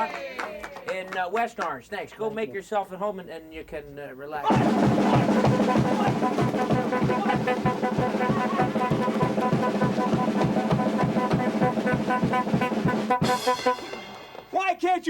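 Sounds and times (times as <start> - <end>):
steady drum beat: 4.4 - 14.8
upbeat brass music: 4.5 - 14.8.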